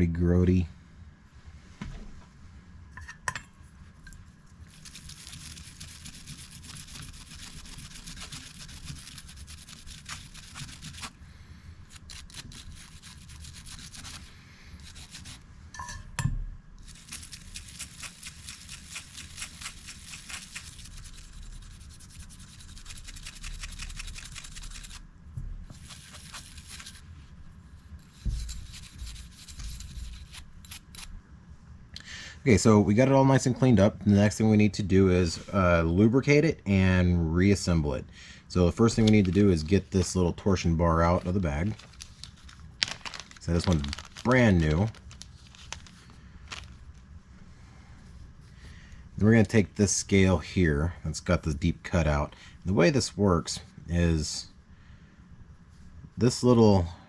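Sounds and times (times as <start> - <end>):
toothbrush scrubbing metal parts: 4.6 - 11.2, 11.9 - 15.4, 16.8 - 25.0, 25.7 - 27.1, 28.0 - 31.1, 38.8 - 40.1.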